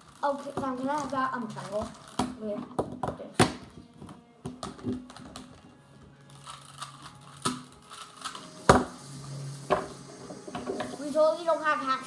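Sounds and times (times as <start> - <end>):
plastic puzzle cube clacking: 0.0 - 5.7, 6.3 - 8.6.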